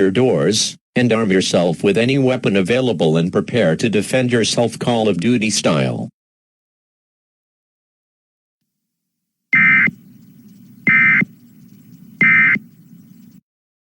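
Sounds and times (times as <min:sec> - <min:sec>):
digital data tone bursts: 0:09.6 - 0:13.2
low hum: 0:09.6 - 0:13.4.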